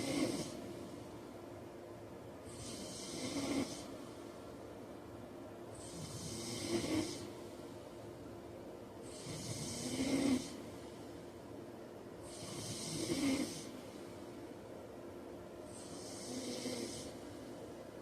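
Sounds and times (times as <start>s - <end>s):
man snoring: 0.0s - 0.6s, 2.5s - 4.0s, 5.8s - 7.3s, 9.1s - 10.6s, 12.2s - 13.8s, 15.7s - 17.2s.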